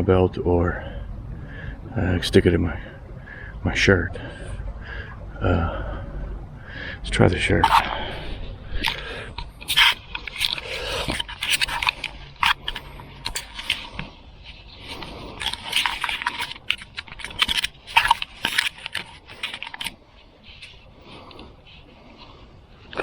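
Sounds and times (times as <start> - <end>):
fabric rubbing on microphone: 7.6 - 23.0.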